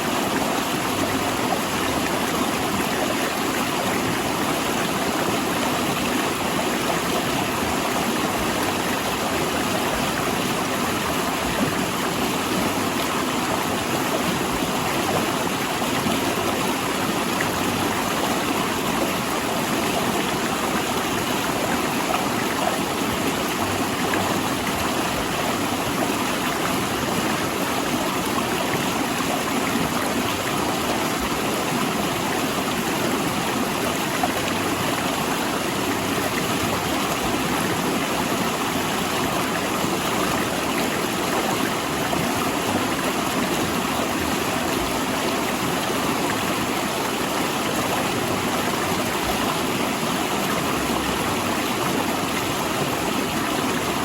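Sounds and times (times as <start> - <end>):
river rushing over rocks: 0.0 - 54.0.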